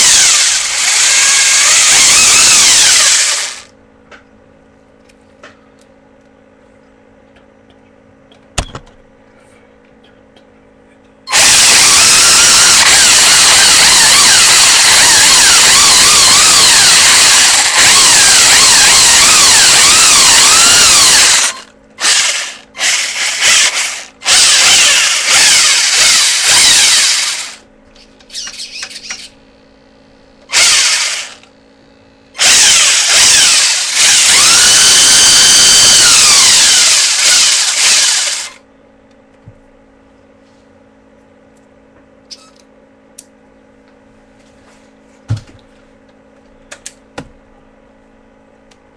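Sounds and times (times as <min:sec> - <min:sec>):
electric motor whining: 0:00.0 - 0:03.7, 0:11.3 - 0:27.6, 0:30.5 - 0:31.5, 0:32.4 - 0:38.6.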